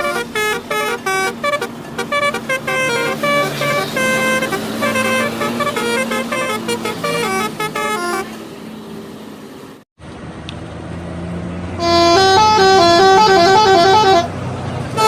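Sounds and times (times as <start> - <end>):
bus horn playing tunes: 0.0 - 8.4, 11.8 - 15.0
engine and road noise: 0.0 - 15.0.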